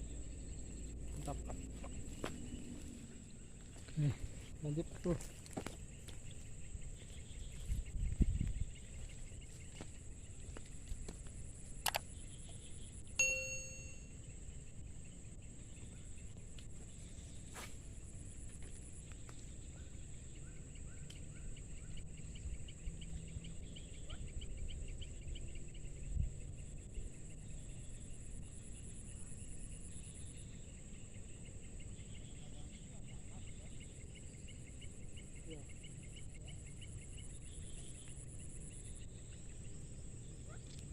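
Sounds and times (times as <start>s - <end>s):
wind rumbling on microphone: 0.0s - 11.7s
high insect drone: 0.0s - 40.9s
rapid pulsing insect chirps: 0.0s - 40.9s
sharp clicks: 11.8s - 12.1s
short ringing ding: 13.2s - 14.2s.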